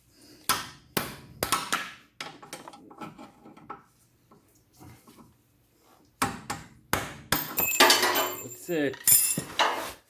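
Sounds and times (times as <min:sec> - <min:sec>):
metal tools clinking on hardware: 0:07.5 - 0:09.8.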